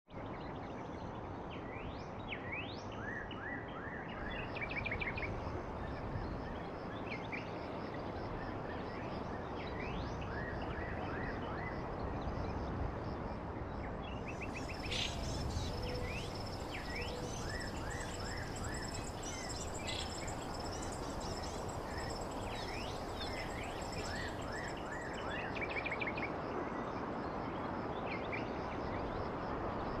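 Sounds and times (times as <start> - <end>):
steady background hiss: 14.0 - 26.3
birds chirping: 14.3 - 25.2
thin high steady tone: 14.6 - 24.9.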